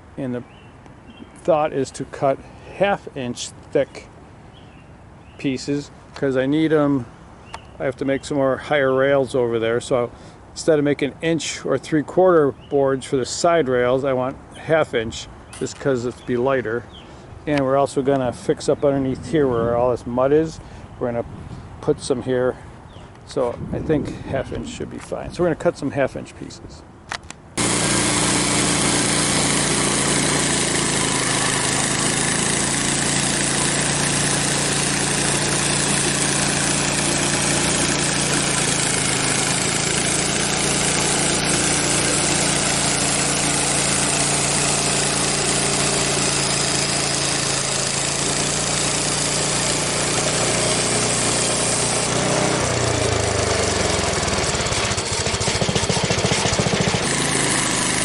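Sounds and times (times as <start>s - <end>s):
saw blade cutting wood: 27.6s - 58.0s
sawmill engine running: 27.6s - 58.0s.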